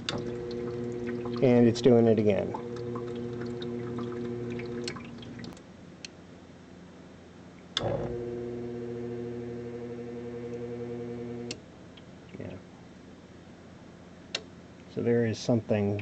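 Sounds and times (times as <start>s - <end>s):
dishwasher pump motor humming: 0.0s - 5.6s, 7.8s - 11.6s
click: 7.8s - 8.0s, 11.4s - 12.1s.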